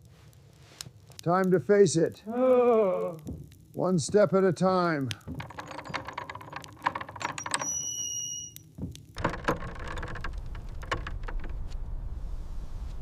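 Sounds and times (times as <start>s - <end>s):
mechanical clicks and rattles: 5.3s - 7.8s, 9.2s - 11.6s
low rumbling noise: 9.2s - 13.0s.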